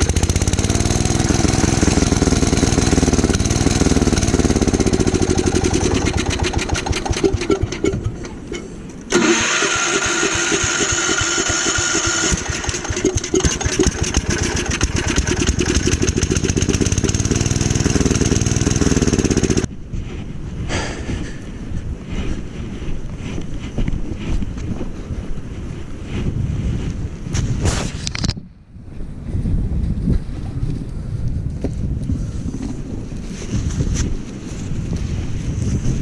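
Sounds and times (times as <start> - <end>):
snow blower engine running: 0.0 - 19.7.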